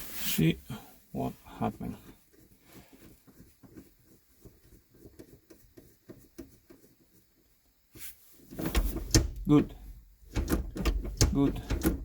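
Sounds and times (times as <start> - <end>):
gear shifter clicks and knocks: 3.0 - 7.2, 8.5 - 12.0.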